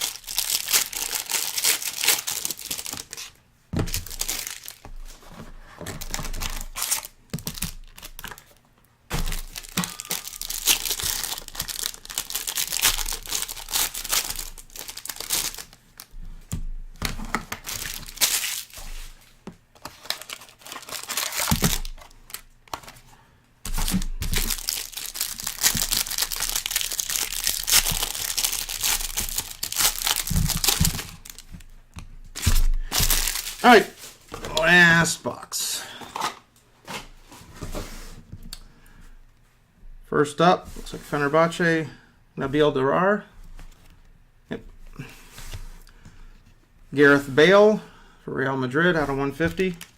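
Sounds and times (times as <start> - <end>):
plastic wrapping crinkling: 0.0 - 16.1, 17.1 - 23.0, 23.7 - 31.7, 32.3 - 34.5.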